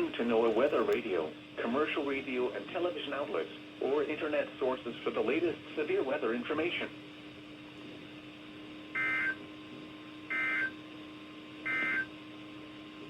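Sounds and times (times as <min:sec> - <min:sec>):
steady low hum: 0:00.0 - 0:13.0
warbling two-tone data bursts: 0:09.0 - 0:09.4, 0:10.3 - 0:10.7, 0:11.7 - 0:12.1.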